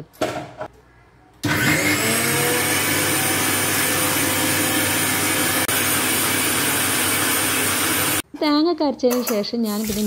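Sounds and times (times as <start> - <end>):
electric mixer grinder running: 1.4 - 8.2.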